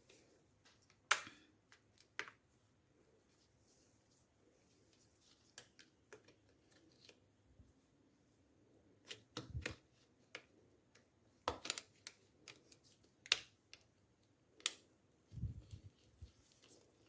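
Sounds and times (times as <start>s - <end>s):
plastic clicks and snaps: 9.0s - 13.9s.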